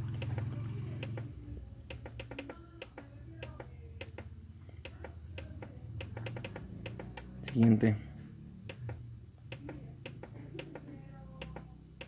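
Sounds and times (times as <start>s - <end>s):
plastic buttons clicking: 1.9s - 7.7s.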